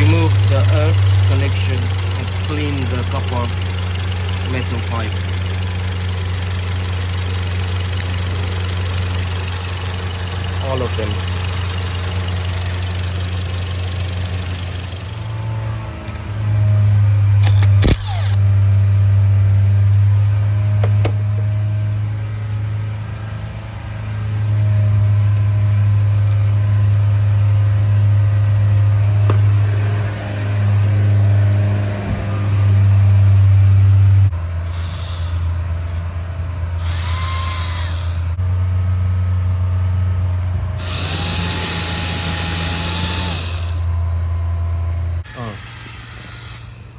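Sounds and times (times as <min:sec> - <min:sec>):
car engine running: 0:00.0 - 0:45.6
sharp clicks: 0:17.4 - 0:18.4.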